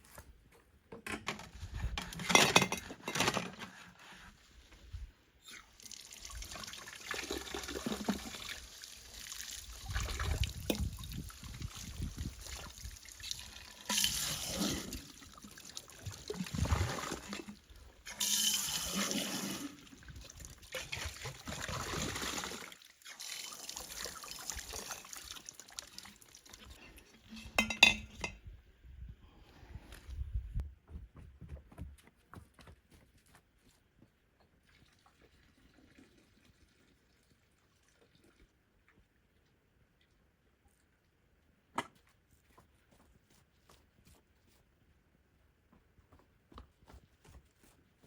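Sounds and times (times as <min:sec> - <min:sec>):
water running and splashing in sink: 0:05.8 - 0:26.8.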